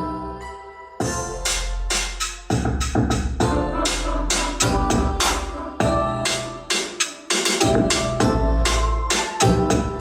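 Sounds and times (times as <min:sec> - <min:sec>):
electronic music with heavy bass: 0:00.0 - 0:10.0.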